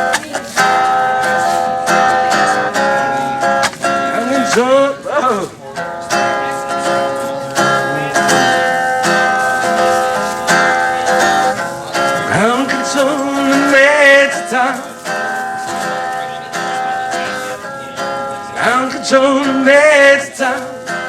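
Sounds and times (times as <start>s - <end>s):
acoustic guitar strumming: 0.0s - 21.0s.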